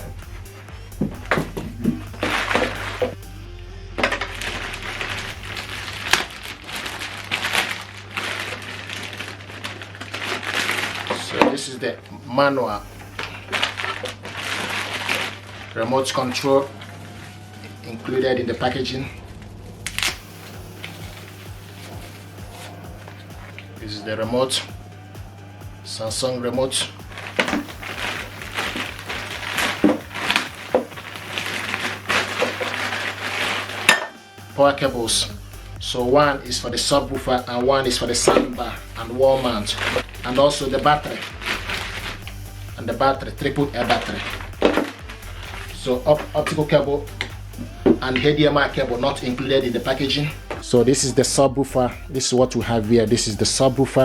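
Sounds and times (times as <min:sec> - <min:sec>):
packaging crinkling and rustling: 0:04.0 - 0:17.8, 0:26.6 - 0:34.3, 0:37.1 - 0:50.7.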